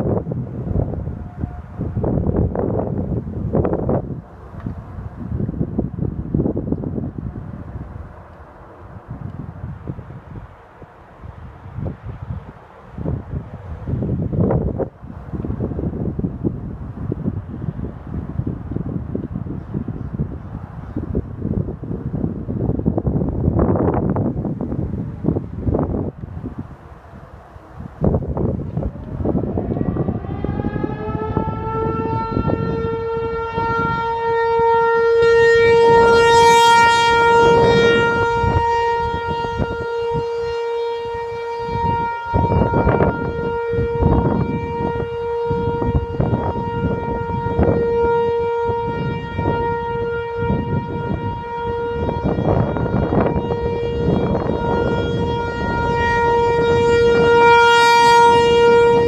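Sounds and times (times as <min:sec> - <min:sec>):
warning siren winding up: 0:28.9 - 0:59.0.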